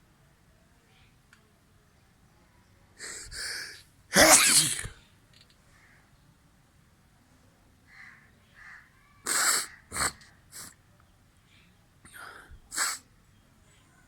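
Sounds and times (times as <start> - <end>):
person sneezing: 3.0 - 5.0.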